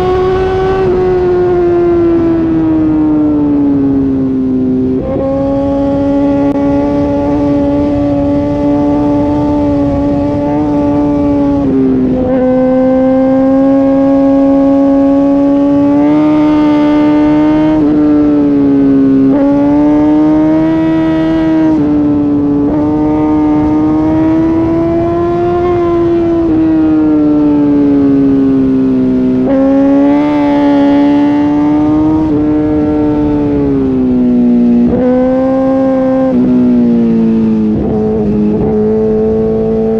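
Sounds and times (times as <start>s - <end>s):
motorcycle engine revving high: 0.0s - 39.9s.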